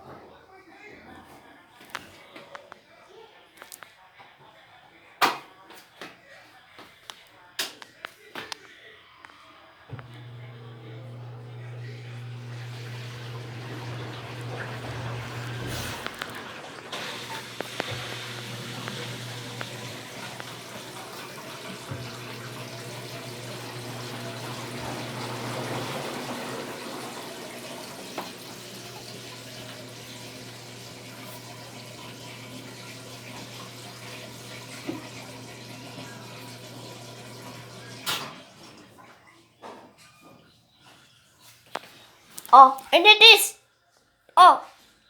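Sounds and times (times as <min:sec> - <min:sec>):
water rushing: 0:11.5 - 0:32.6.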